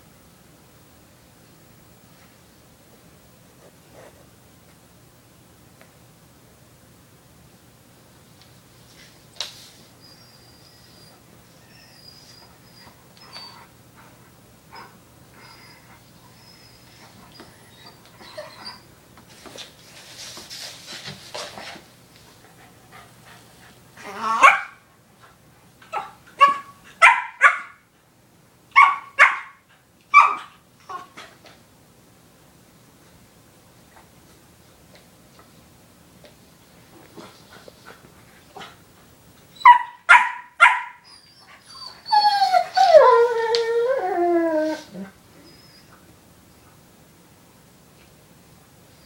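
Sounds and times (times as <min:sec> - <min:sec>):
puppy whining: 0:10.0 - 0:13.7, 0:14.7 - 0:18.9, 0:24.0 - 0:24.7, 0:40.7 - 0:46.0
dogs breathing and scuffling: 0:12.5 - 0:24.1, 0:33.8 - 0:39.2
puppy yipping: 0:28.8 - 0:30.5, 0:39.6 - 0:43.0.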